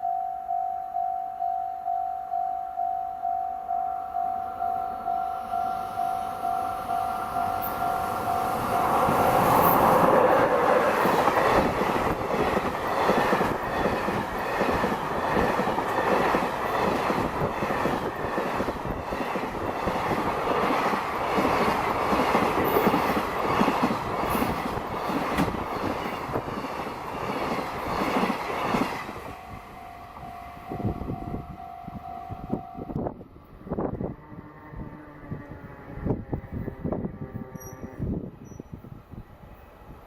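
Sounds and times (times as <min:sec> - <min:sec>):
train wheels clacking over rail joints: 0:09.0 - 0:29.2.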